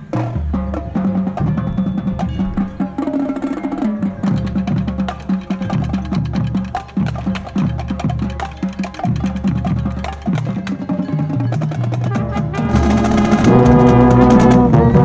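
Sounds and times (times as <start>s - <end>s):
rapid marching drum strokes: 0.0s - 15.0s
sustained low brass notes: 12.1s - 15.0s.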